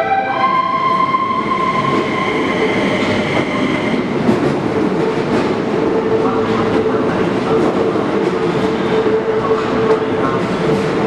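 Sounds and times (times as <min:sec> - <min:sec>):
train horn high note: 0:00.0 - 0:02.1
train rolling rumble: 0:00.7 - 0:11.0.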